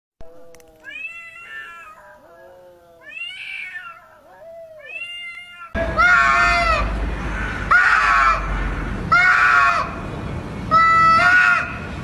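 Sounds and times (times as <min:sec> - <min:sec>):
background noise: 0:00.2 - 0:10.8
cat meowing: 0:00.5 - 0:06.5.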